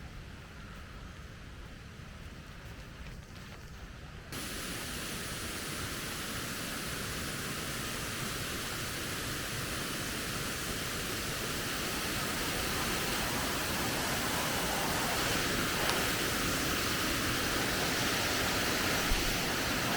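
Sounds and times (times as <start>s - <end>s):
waterfall roaring: 4.4s - 19.9s.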